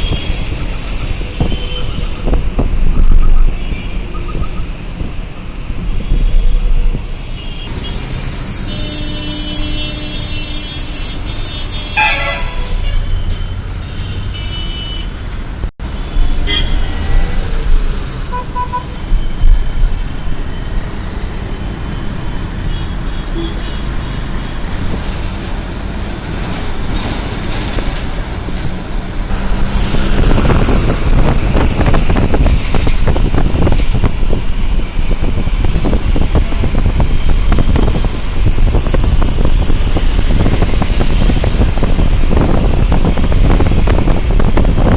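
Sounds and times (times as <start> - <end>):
road traffic engines: 0.0 - 44.9
vehicle horns honking: 7.4 - 15.2, 16.1 - 17.1, 18.3 - 19.4, 22.6 - 24.1.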